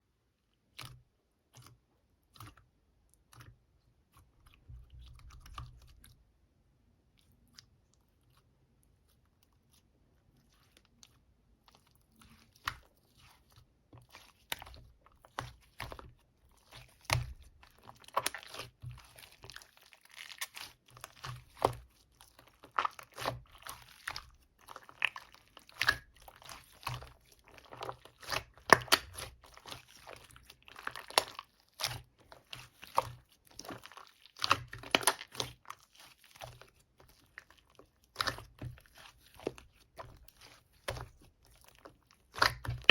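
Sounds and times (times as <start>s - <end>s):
slime squished crackling and popping: 14.3s - 42.9s.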